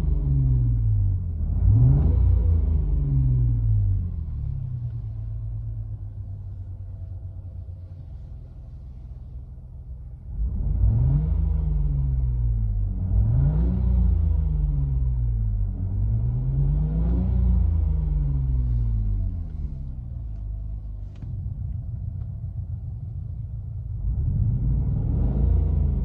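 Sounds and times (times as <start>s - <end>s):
simulated car engine revving: 0.0s - 5.3s, 10.3s - 20.4s, 24.0s - 26.0s.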